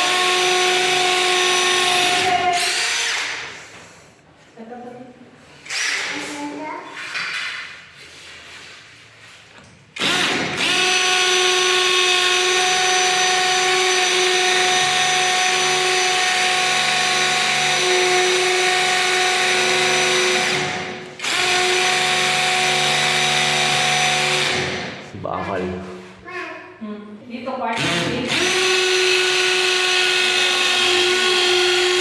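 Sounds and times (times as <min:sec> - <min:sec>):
cordless drill whining: 0:10.0 - 0:25.0, 0:27.8 - 0:32.0.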